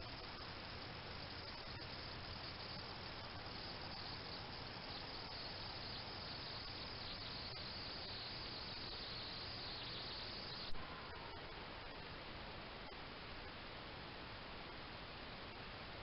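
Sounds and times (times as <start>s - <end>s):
crickets trilling: 0.0s - 10.8s
microphone hiss: 0.0s - 16.0s.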